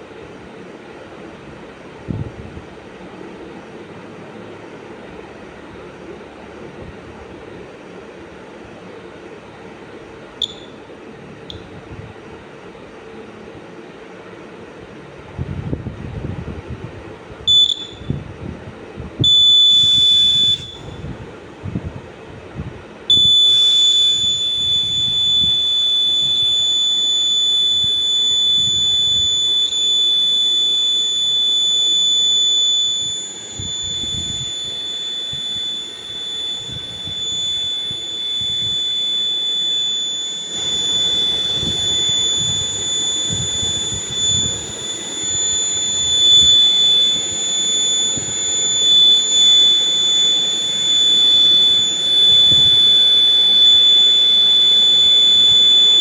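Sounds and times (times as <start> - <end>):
high-pitched electronic buzzer: 19.3 - 21.0, 23.1 - 56.0.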